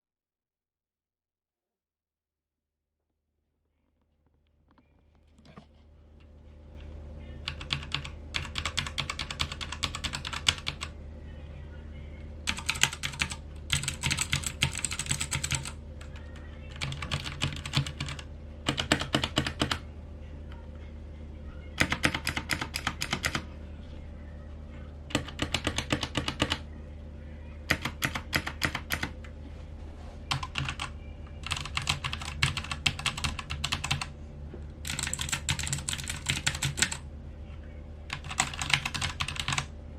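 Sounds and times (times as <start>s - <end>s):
low hum: 3.3s - 9.0s, 10.8s - 12.5s, 19.8s - 21.8s, 23.4s - 25.4s, 26.6s - 27.7s, 29.1s - 38.6s.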